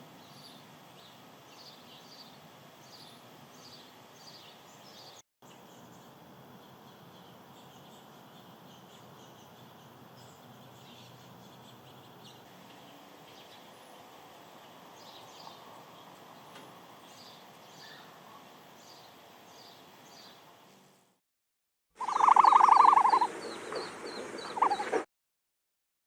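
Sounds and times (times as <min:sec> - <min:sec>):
steady background hiss: 0:00.0 - 0:21.2
small animal chirping: 0:22.0 - 0:25.0.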